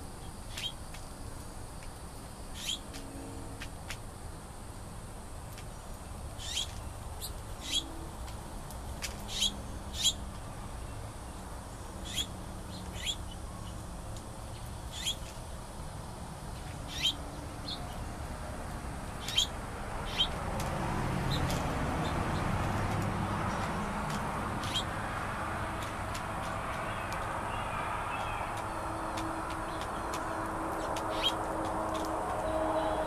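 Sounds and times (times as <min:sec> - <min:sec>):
outdoor background noise: 0:00.0 - 0:33.0
bird chip calls: 0:02.6 - 0:02.9, 0:06.4 - 0:07.9, 0:09.2 - 0:10.2, 0:12.0 - 0:13.3, 0:14.9 - 0:15.3, 0:16.8 - 0:18.0, 0:19.2 - 0:20.4, 0:24.6 - 0:24.9, 0:26.8 - 0:31.4.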